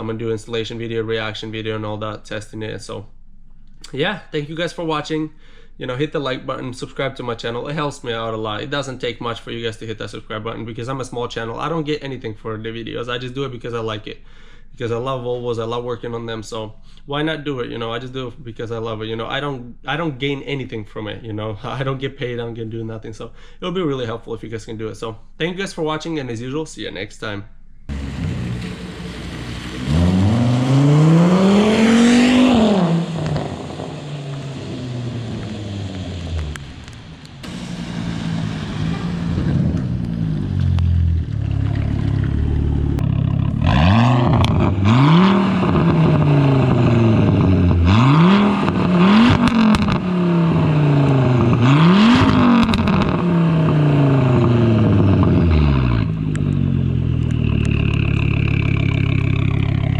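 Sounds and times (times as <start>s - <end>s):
car engine accelerating hard: 27.9s - 59.9s.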